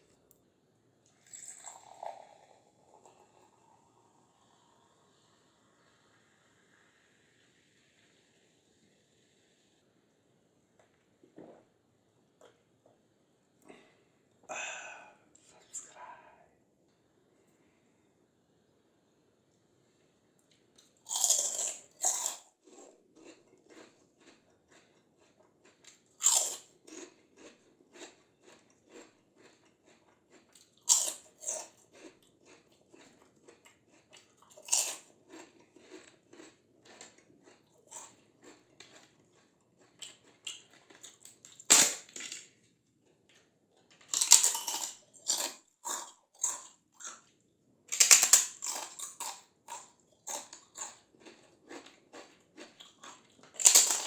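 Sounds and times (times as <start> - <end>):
crunchy chewing: 20.8 - 42.5, 44.0 - 47.3, 47.9 - 54.0
crunching bites of crispy snacks: 20.8 - 42.6, 44.0 - 47.3, 47.9 - 54.0.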